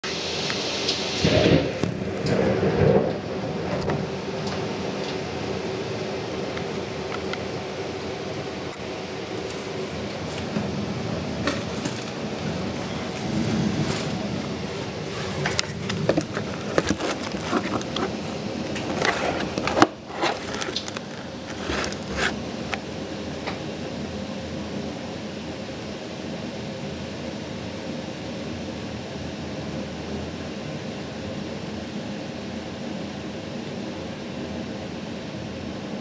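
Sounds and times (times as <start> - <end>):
rain falling: 0.0 - 36.0
crackling drips and splashes: 0.4 - 14.8, 15.4 - 23.6.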